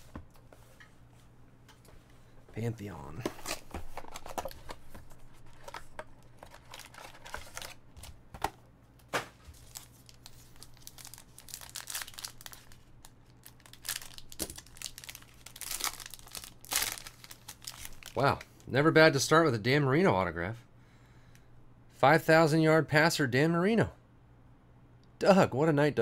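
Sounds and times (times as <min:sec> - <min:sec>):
packaging crinkling and tearing: 0:03.3 - 0:08.2, 0:09.4 - 0:18.6.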